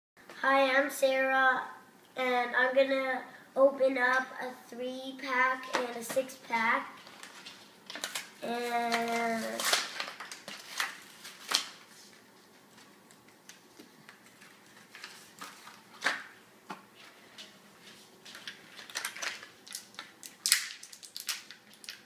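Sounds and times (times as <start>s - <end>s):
plastic packaging crinkling: 7.0s - 16.3s, 17.8s - 22.0s.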